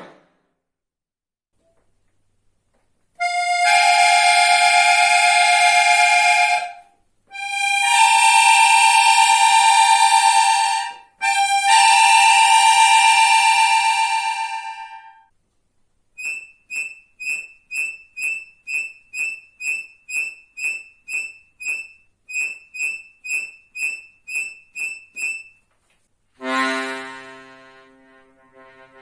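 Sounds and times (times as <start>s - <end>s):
held high accordion note: 3.2s - 15.2s, 26.4s - 29.0s
low accordion chord: 3.2s - 15.2s, 26.4s - 29.0s
accordion chirps imitating cricket: 16.2s - 25.6s.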